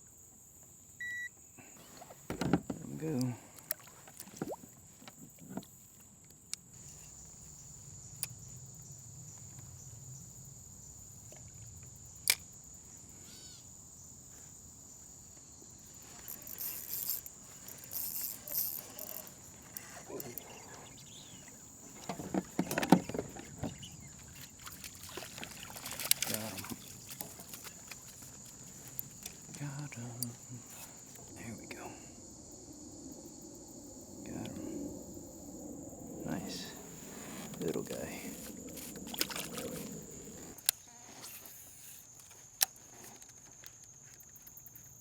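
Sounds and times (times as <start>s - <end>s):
clattering handling noise: 21.9s - 23.8s.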